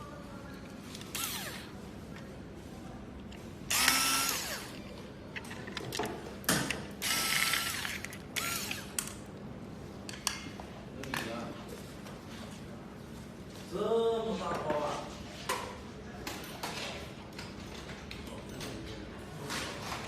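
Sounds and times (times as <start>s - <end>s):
power tool whining: 1.1s - 1.7s, 3.7s - 4.8s, 7.0s - 8.9s.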